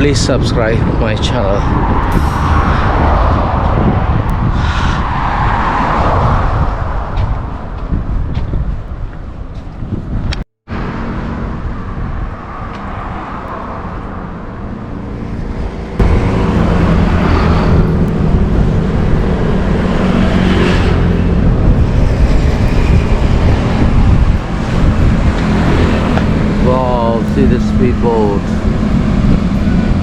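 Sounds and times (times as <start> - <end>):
road traffic rumble: 0.0 - 30.0
low engine hum: 9.4 - 30.0.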